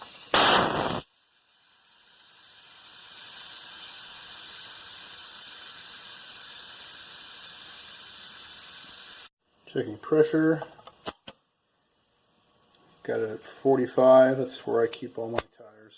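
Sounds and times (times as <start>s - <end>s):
loud rush of hiss: 0.0s - 1.1s.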